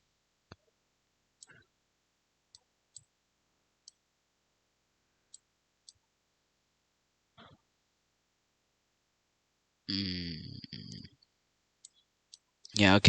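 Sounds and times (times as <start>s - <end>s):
faint computer mouse clicks: 11.8s - 12.5s.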